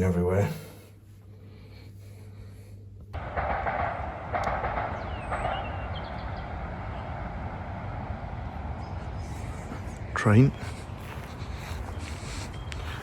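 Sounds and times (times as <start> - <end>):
train passing: 3.2 - 13.0
faint bird chirps: 5.0 - 7.1.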